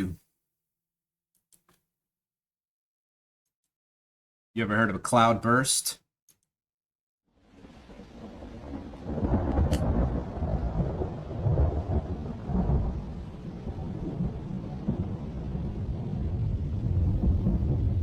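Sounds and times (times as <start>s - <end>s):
storm rumble: 7.4s - 18.0s.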